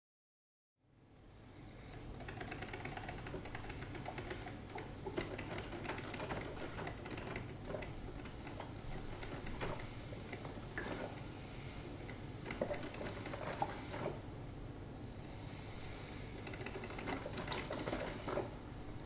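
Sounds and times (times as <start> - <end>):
coffee machine humming: 1.6 - 14.6, 15.5 - 19.0
ticks and crackles: 2.0 - 11.1.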